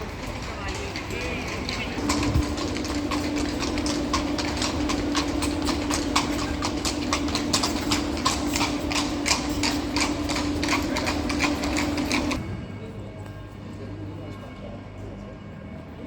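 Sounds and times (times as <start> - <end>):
horse hooves clip-clopping: 0.0 - 12.4
steady low hum: 0.0 - 16.0.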